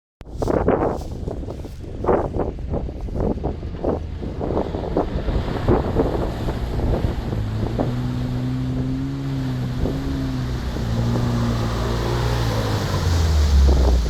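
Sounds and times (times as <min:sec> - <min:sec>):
wind buffeting microphone: 0:00.2 - 0:14.0
engine running: 0:03.0 - 0:14.0.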